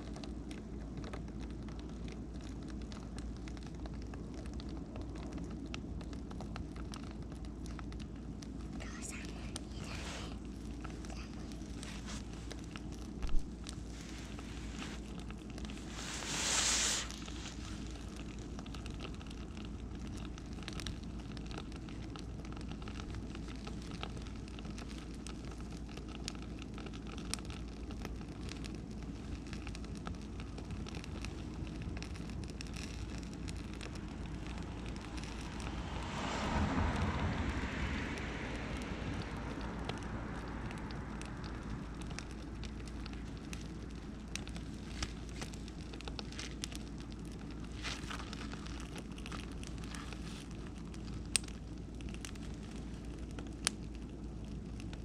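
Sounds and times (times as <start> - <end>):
bonfire crackling: 0.0 - 55.0
short hiss: 16.0 - 17.6.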